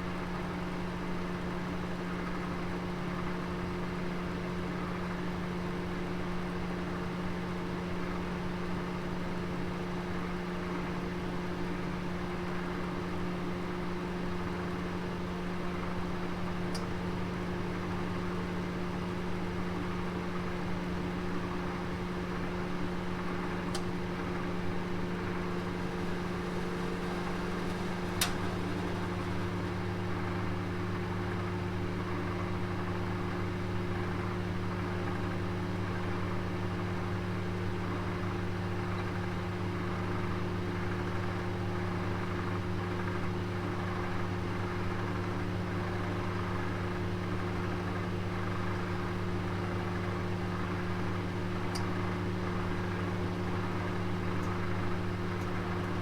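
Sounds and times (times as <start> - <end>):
oven humming: 12.8 - 35.5, 43.6 - 56.0.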